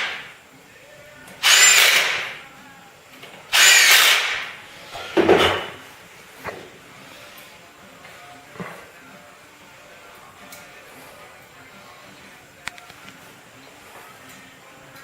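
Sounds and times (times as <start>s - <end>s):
power drill bursts: 1.4s - 2.4s, 3.5s - 4.5s.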